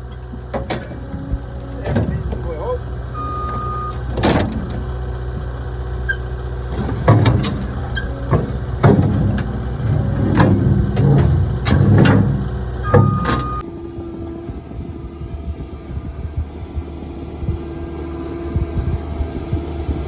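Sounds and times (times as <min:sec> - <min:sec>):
clunks and knocks: 0:00.0 - 0:13.6
diesel engine idling: 0:00.0 - 0:13.6.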